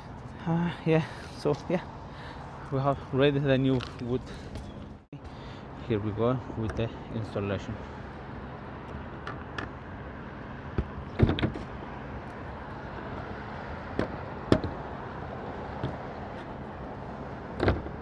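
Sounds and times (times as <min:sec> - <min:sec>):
plywood knocks and thumps: 0:10.8 - 0:11.7.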